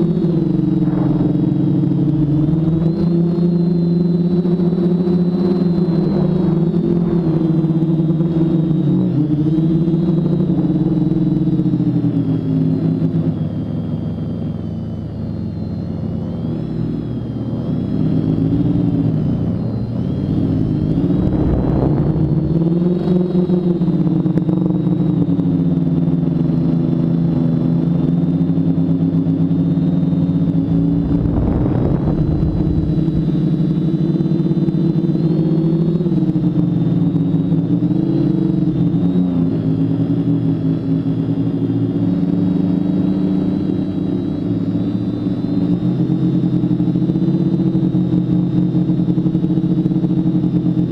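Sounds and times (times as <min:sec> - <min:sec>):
thin high whine: 0:00.0 - 0:11.2, 0:29.9 - 0:35.8
quadcopter motors humming: 0:00.0 - 0:50.9
rushes of air: 0:00.4 - 0:03.6, 0:30.5 - 0:34.0.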